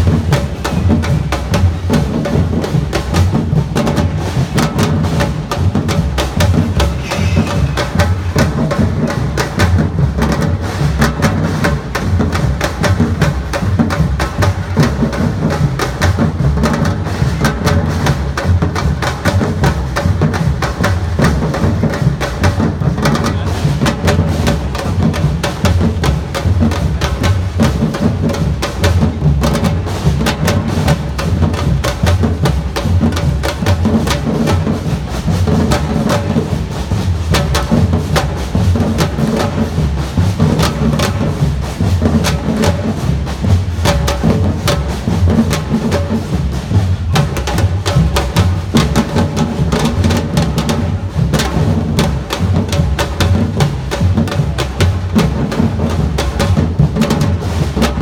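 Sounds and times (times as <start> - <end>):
snare and high drum strokes: 0.0 - 58.0
deep bass drums: 46.9 - 58.0.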